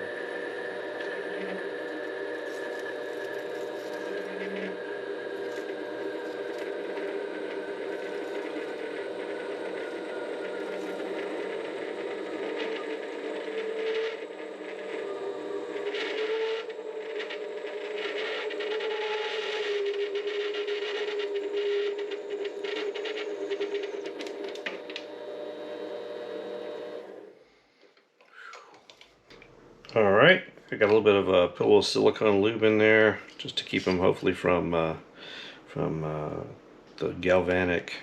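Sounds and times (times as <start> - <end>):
lathe motor whining: 0.0 - 27.4
cutting tool scraping metal: 1.0 - 11.6.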